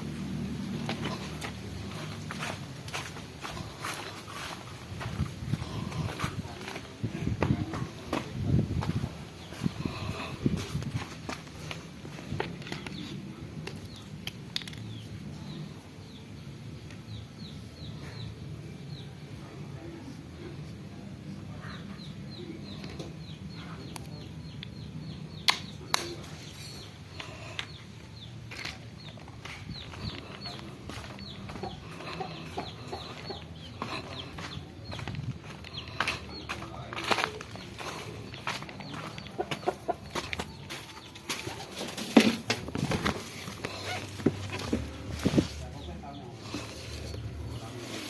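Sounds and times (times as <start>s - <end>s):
chicks peeping: 0.1s - 13.2s, 21.6s - 48.0s
poultry clucking: 21.6s - 48.0s.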